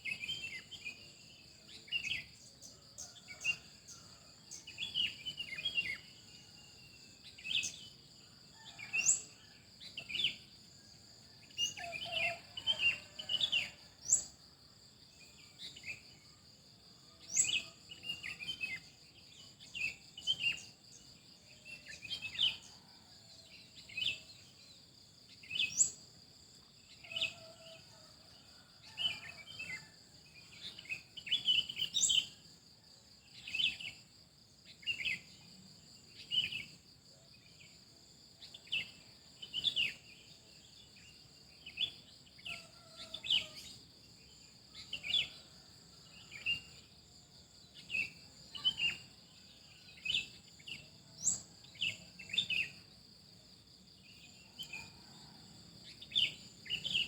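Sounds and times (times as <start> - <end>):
songbirds chirping: 0.0 - 32.4.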